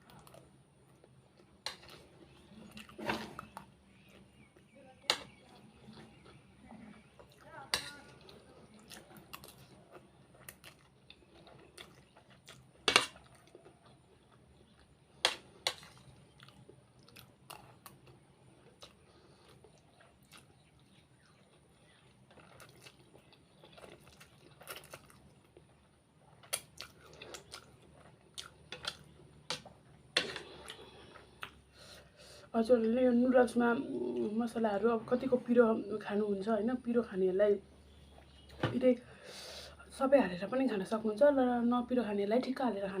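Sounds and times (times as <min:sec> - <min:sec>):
person chewing food: 0:00.0 - 0:32.2.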